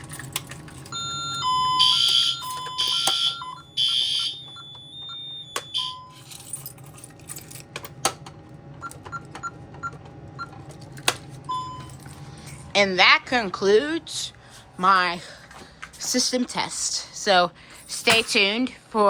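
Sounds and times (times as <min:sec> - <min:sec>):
fire alarm sounder blasts: 0:00.9 - 0:06.2, 0:11.5 - 0:12.0
keypad beeps: 0:00.9 - 0:06.2, 0:08.8 - 0:10.6, 0:11.5 - 0:11.9.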